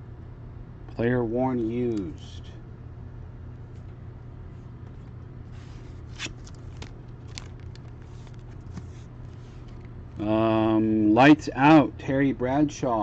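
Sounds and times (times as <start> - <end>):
steady low hum: 0.0 - 13.0
trading cards sliding: 4.9 - 9.9.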